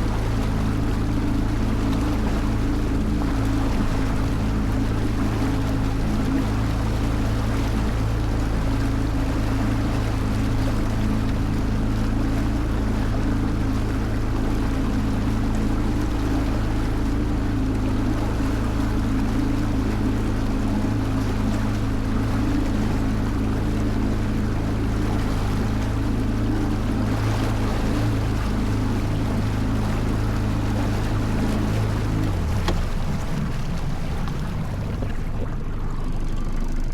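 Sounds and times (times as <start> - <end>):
motorboat engine humming: 0.0 - 36.9
rushing water and air: 0.0 - 36.9.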